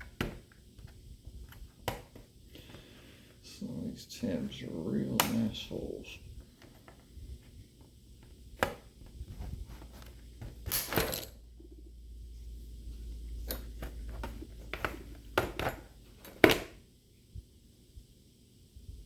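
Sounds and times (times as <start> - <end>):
plastic case clicks and knocks: 13.8 - 16.7.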